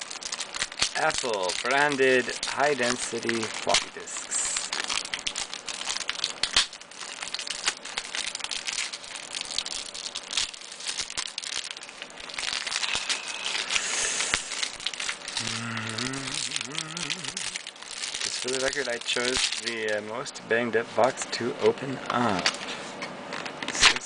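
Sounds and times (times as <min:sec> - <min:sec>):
plastic packaging crinkling: 0:00.0 - 0:20.3, 0:21.0 - 0:24.0.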